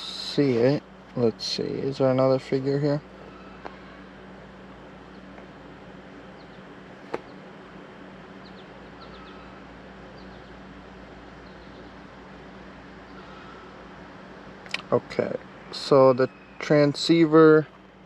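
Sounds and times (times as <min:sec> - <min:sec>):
steady low hum: 0:00.0 - 0:18.0
high bird chirps: 0:08.4 - 0:10.7, 0:11.4 - 0:12.0, 0:16.3 - 0:16.6
sharp click: 0:14.6 - 0:14.9.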